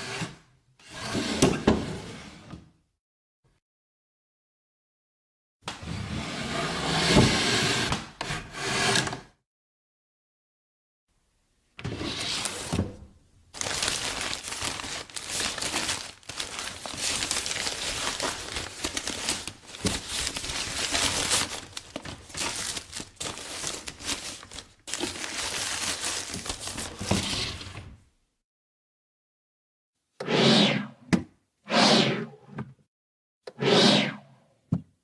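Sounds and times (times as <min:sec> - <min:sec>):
drawer scraping and rattling: 0:11.8 - 0:24.4, 0:26.9 - 0:28.0.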